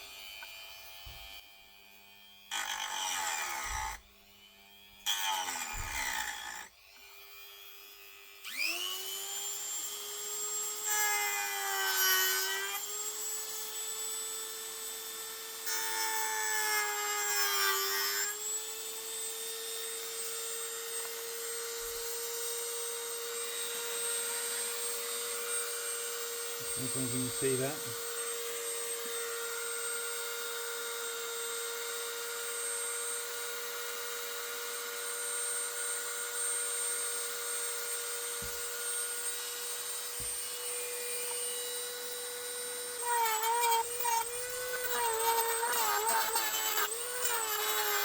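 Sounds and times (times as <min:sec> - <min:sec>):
power tool motor whining: 0:02.2 - 0:48.0
cutter grinding into plastic: 0:26.5 - 0:29.8, 0:42.9 - 0:48.0.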